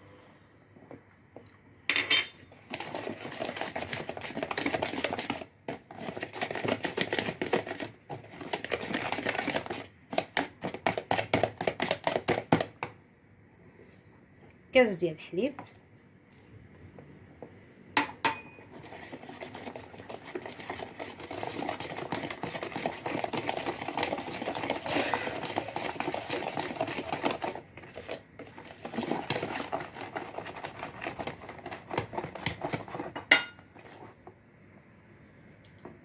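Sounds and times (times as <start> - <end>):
utensil beating batter in bowl: 2.6 - 13.0, 18.4 - 34.4.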